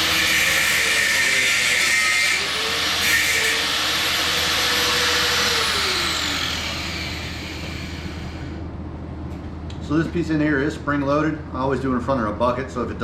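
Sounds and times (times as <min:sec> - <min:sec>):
cut-off wheel cutting metal: 0:00.0 - 0:08.6.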